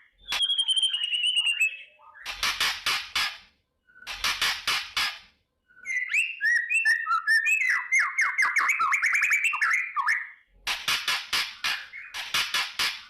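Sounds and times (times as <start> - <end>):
bird whistled notes: 0.2 - 2.2, 5.8 - 10.4.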